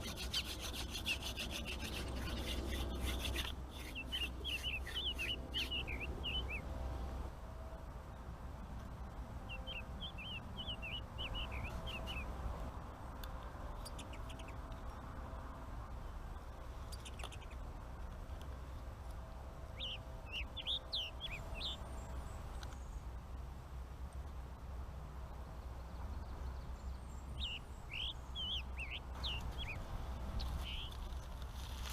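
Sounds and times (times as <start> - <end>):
small bird chirping: 0.0 - 6.6, 9.5 - 12.3, 13.7 - 14.6, 16.8 - 17.7, 19.8 - 23.0, 26.2 - 31.4
steady low hum: 0.0 - 31.9.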